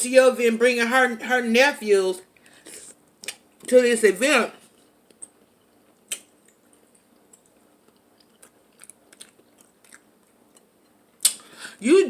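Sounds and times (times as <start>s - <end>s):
wet mouth clicks and smacks: 3.2s - 3.4s, 6.0s - 11.5s
person chewing food: 4.7s - 11.5s.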